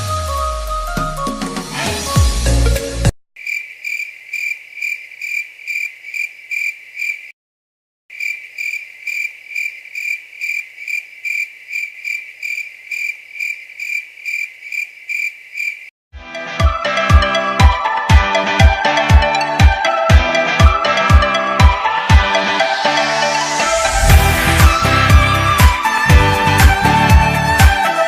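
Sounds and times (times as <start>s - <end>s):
cricket chirping: 3.4s - 7.3s, 8.1s - 15.9s.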